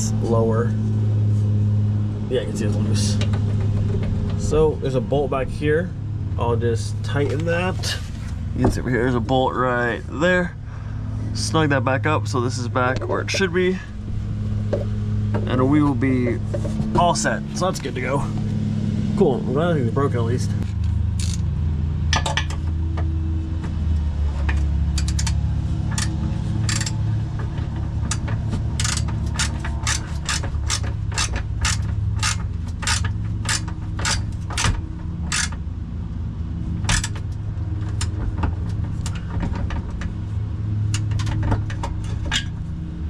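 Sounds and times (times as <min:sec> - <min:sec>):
steady low hum: 0:00.0 - 0:43.0
ratchet wrench clicking: 0:21.2 - 0:21.5, 0:24.9 - 0:27.1, 0:27.9 - 0:35.6.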